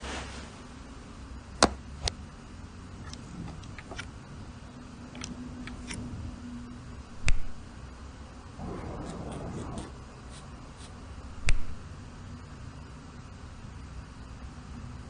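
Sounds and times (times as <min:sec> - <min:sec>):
faint steady hum: 0:00.0 - 0:15.0
sharp clicks: 0:07.2 - 0:07.6.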